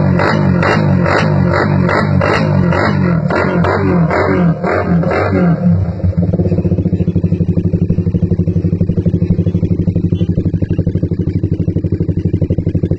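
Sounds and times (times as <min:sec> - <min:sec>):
motorcycle engine idling: 0:00.0 - 0:12.9.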